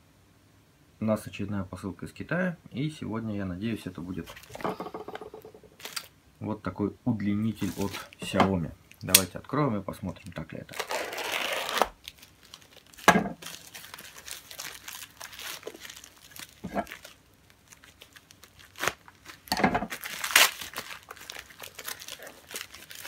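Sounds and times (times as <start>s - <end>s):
packaging tearing and crinkling: 5.8s - 6.1s, 10.7s - 23.0s.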